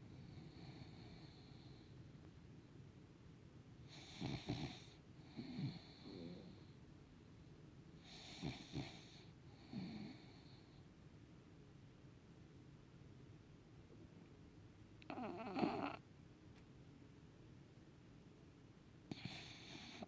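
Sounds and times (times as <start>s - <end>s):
dog snoring: 0.2s - 1.9s, 3.9s - 6.7s, 8.0s - 10.8s, 15.0s - 16.0s, 19.1s - 20.0s.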